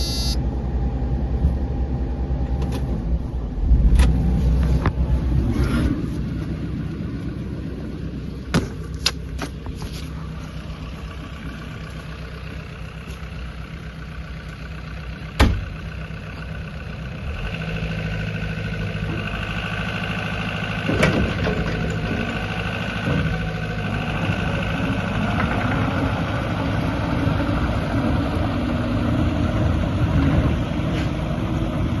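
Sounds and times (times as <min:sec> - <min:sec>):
steady whine: 0:00.0 - 0:03.7
diesel engine running: 0:00.0 - 0:32.0.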